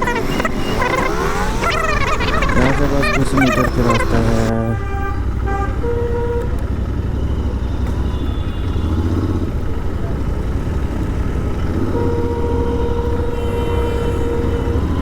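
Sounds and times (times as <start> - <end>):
motorcycle engine rumbling: 0.0 - 15.0.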